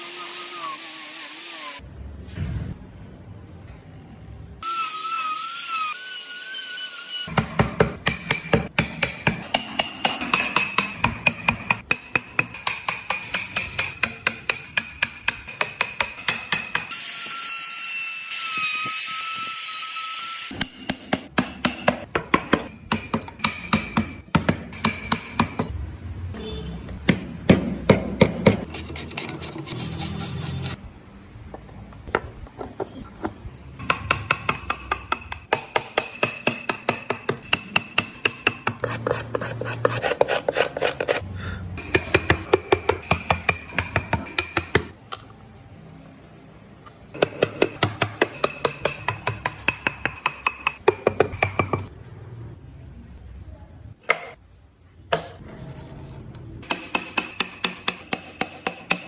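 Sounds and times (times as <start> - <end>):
mallet tapping chisel into wood: 47.2 - 51.9, 56.7 - 59.0.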